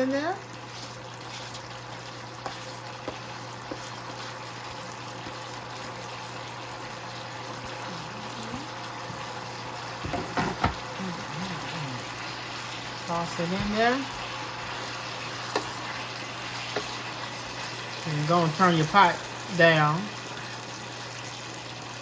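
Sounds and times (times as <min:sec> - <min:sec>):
sauce bubbling and sizzling: 0:00.0 - 0:22.0
clatter of knocks: 0:10.0 - 0:10.8.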